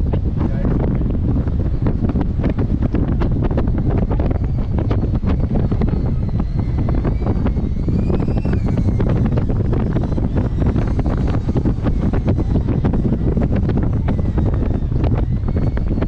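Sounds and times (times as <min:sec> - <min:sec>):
strong wind buffeting microphone: 0:00.0 - 0:16.0
faint high whine: 0:01.4 - 0:16.0.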